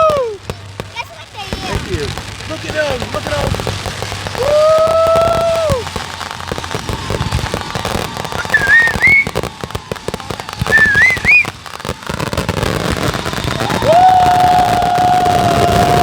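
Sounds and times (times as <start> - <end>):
fireworks crackling and popping: 0.0 - 16.0
rising wavering whistles: 4.4 - 10.0, 10.6 - 11.7
long steady whistle: 4.4 - 16.0.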